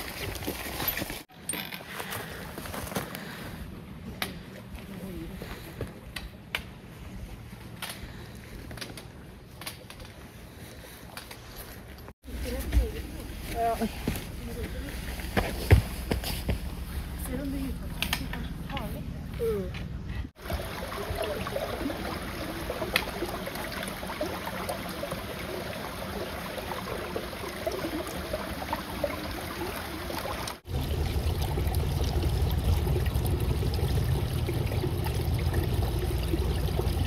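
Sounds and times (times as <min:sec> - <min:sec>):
water trickling and gurgling: 0:20.4 - 0:37.0.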